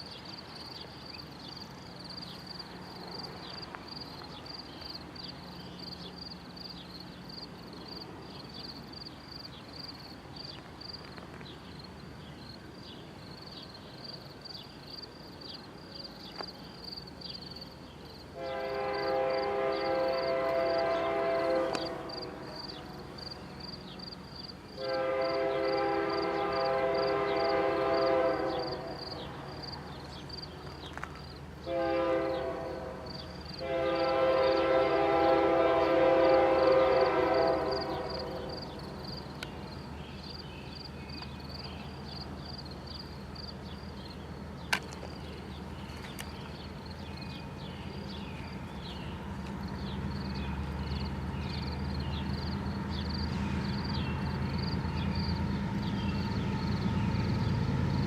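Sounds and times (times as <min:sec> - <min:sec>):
diesel locomotive rumble: 0:00.0 - 0:58.0
locomotive air horn blasts: 0:18.4 - 0:23.1, 0:24.8 - 0:29.0, 0:31.6 - 0:38.5.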